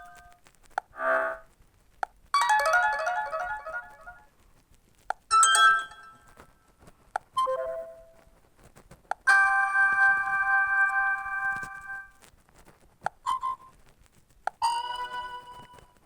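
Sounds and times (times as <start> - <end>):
phone ringtone chimes: 2.4 - 4.2, 5.3 - 6.2.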